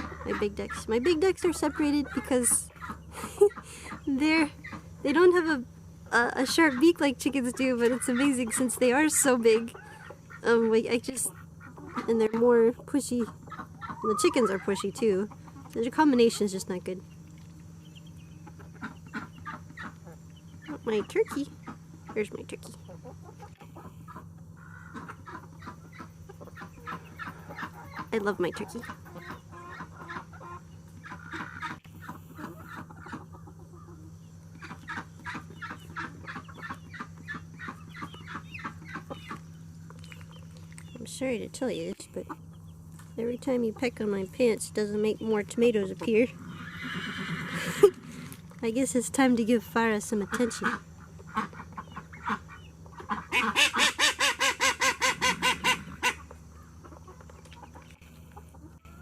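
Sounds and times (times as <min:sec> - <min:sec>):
duck quacking: 0:00.0 - 0:04.8, 0:50.1 - 0:56.3
chickens clucking: 0:00.0 - 0:59.0
steady low hum: 0:00.0 - 0:59.0.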